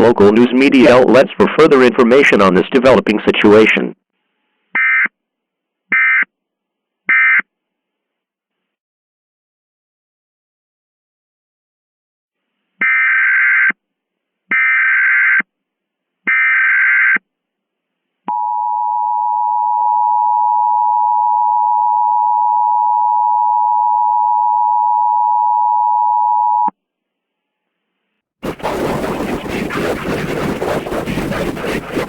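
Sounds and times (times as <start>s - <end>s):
raspy data bursts: 28.4s - 32.0s.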